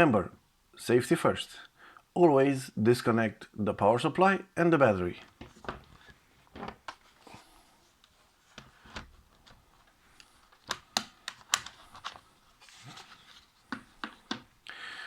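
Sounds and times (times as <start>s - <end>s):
plastic clicks and knocks: 10.5s - 12.2s, 13.7s - 14.5s.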